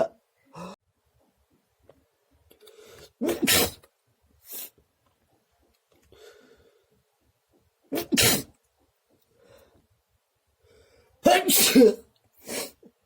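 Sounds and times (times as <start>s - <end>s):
person sneezing: 3.2s - 3.8s, 8.0s - 8.5s, 11.2s - 12.8s.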